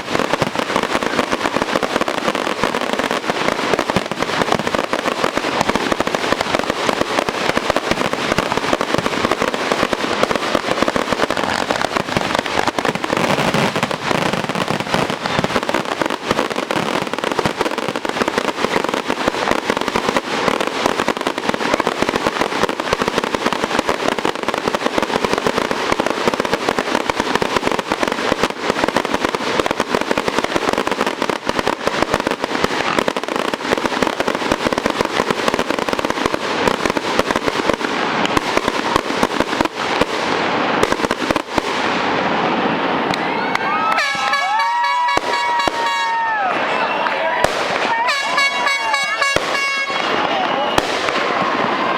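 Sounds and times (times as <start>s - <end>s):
fireworks crackling: 0.0s - 51.9s.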